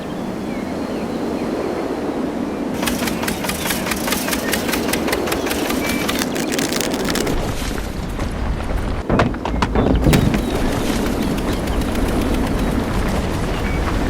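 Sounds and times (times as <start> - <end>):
clatter of clicks and knocks: 2.8 - 14.0.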